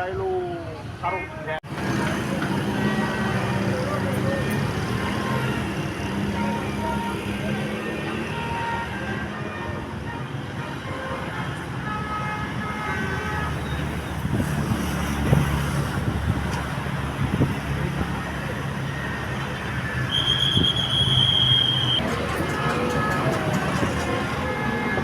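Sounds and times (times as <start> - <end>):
road traffic: 0.0 - 25.0
heavy engine rumbling: 14.0 - 25.0.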